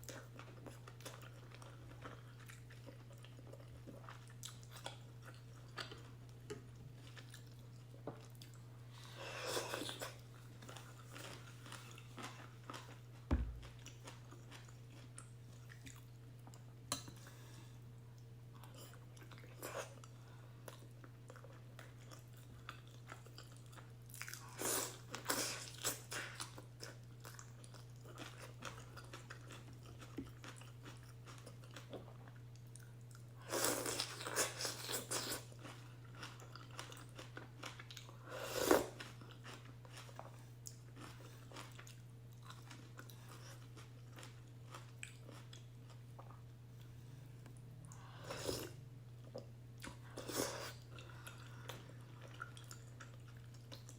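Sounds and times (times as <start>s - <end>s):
chewing noodles: 0.0s - 16.6s, 47.9s - 53.9s
steady low hum: 0.0s - 53.9s.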